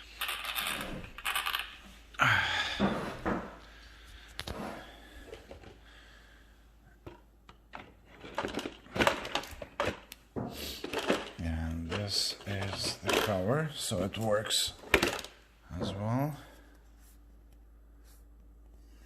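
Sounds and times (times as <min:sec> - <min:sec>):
plastic and metal parts clattering: 0:07.0 - 0:15.4.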